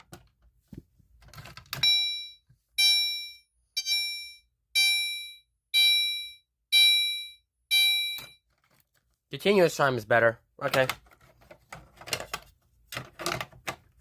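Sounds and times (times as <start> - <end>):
fire alarm chime: 1.8 - 8.4.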